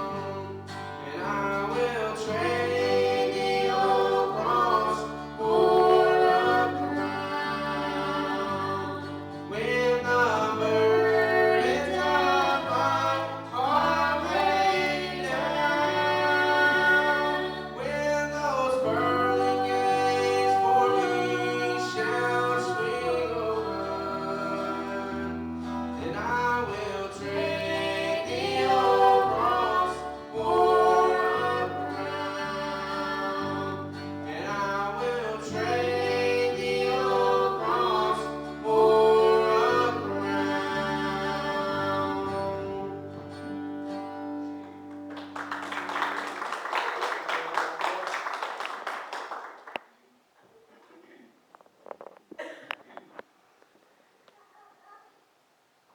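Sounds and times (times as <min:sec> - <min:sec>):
person singing: 0:00.0 - 0:43.1
guitar: 0:00.0 - 0:47.4.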